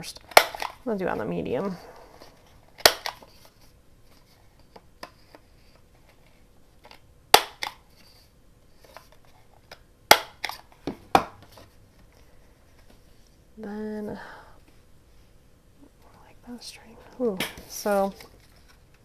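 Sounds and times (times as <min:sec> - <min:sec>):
corner punch snapping: 0:07.3 - 0:07.8, 0:10.1 - 0:11.4.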